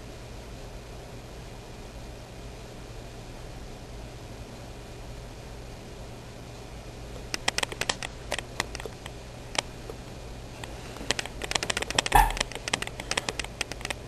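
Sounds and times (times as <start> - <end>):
steady hiss with low hum: 0.0 - 14.0
sharp clicks and taps: 7.2 - 9.7, 11.0 - 14.0.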